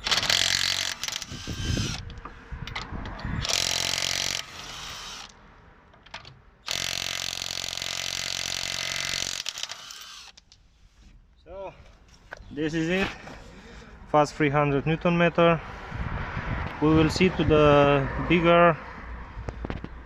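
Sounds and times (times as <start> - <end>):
cordless impact wrench: 0.0 - 5.4, 6.7 - 10.4.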